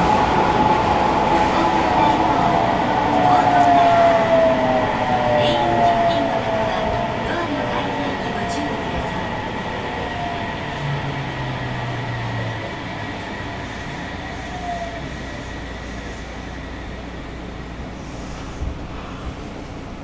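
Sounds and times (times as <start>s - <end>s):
wheel and track rumble: 0.0s - 20.0s.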